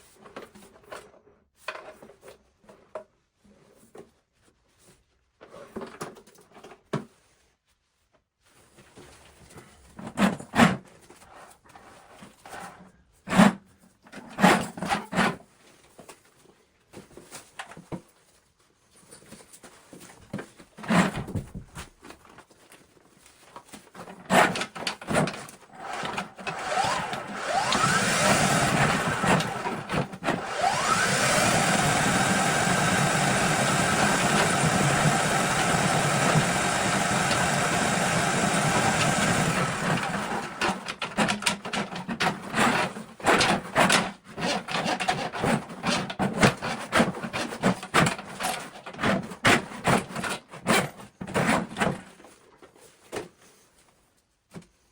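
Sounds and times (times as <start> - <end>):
knocks and clatter of handling: 4.8 - 7.4, 13.4 - 30.5, 39.0 - 54.9
small motor running: 25.8 - 40.8.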